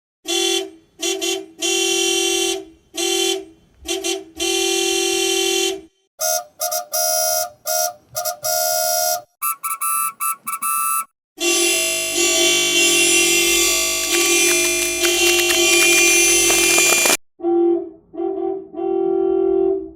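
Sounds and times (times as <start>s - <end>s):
taxi horn honking: 3.9s - 17.1s
quick high beeps: 9.4s - 11.1s.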